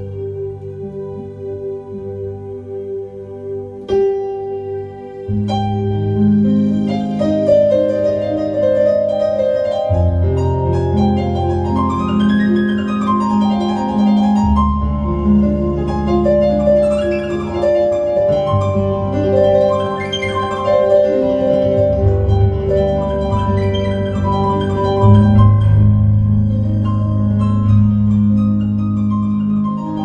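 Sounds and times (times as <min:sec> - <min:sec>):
improvised piano music: 0:00.0 - 0:30.0.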